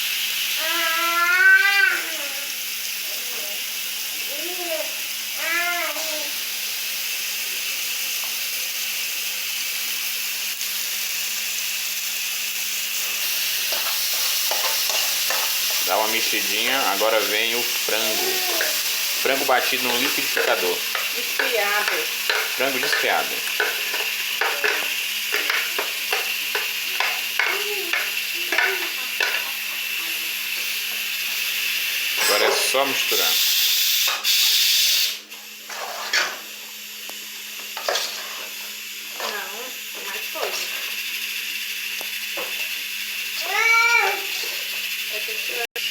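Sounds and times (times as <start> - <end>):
vegetables sizzling in a pan: 0.0 - 45.9
spoon scraping a pan: 13.2 - 29.5, 35.7 - 36.5, 37.8 - 38.6.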